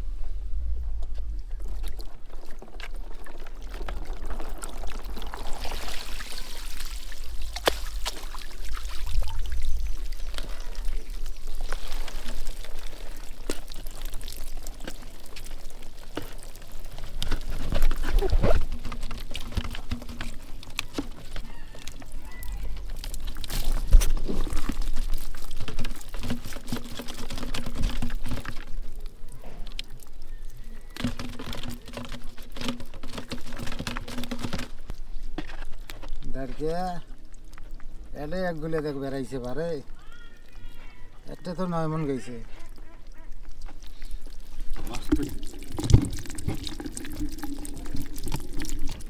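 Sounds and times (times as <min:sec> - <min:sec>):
water pouring and splashing: 0:01.4 - 0:35.0, 0:43.4 - 0:49.0.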